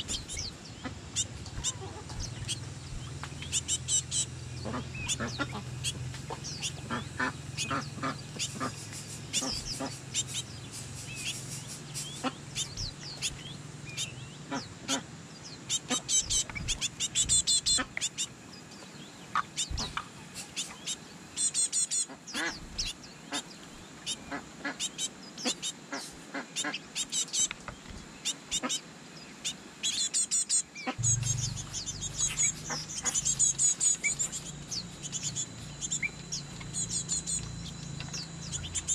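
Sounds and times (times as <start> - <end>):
ducks and fowl calling: 0.0 - 15.1, 15.7 - 18.3, 19.3 - 27.5, 30.8 - 38.9
low steady hum: 0.0 - 21.2, 30.9 - 38.9.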